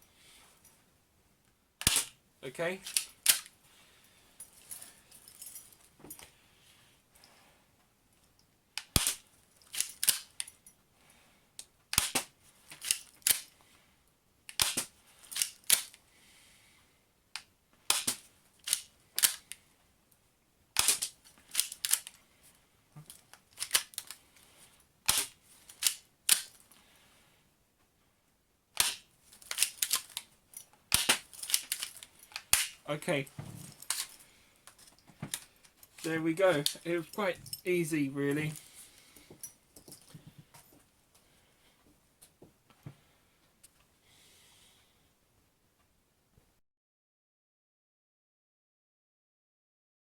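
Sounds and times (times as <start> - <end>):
airsoft pistol snaps and clicks: 1.8 - 2.2, 8.8 - 10.4, 11.9 - 13.5, 14.5 - 16.0, 17.4 - 19.6, 20.8 - 22.1, 25.1 - 26.5, 28.8 - 30.3, 30.9 - 32.8.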